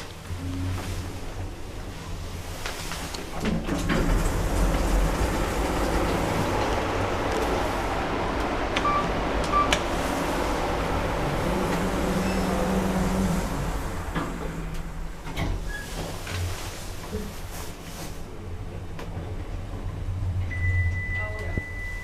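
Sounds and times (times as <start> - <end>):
lift car rumble and hum: 0.0 - 22.0
low steady tone: 8.8 - 15.1.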